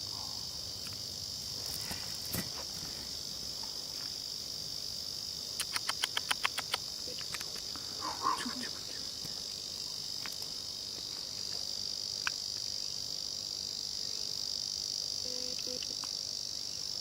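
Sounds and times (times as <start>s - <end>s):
insects droning: 0.0s - 17.0s
sharp clicks: 5.6s - 7.7s.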